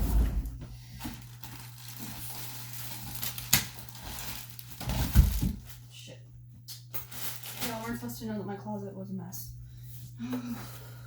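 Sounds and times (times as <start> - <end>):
packaging rustling: 0.9 - 5.8, 7.0 - 8.0.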